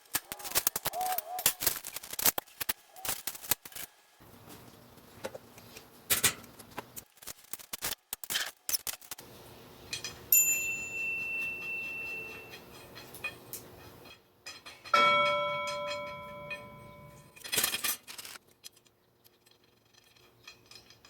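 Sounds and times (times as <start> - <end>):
metal shelving parts clattering: 6.1 - 6.7, 11.3 - 18.4
metal part ringing: 14.0 - 17.8.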